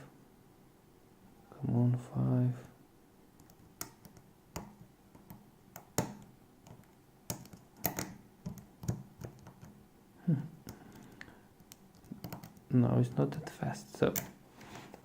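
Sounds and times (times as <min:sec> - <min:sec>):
lock pick clicking in a lock: 0:03.4 - 0:09.8, 0:10.9 - 0:12.7.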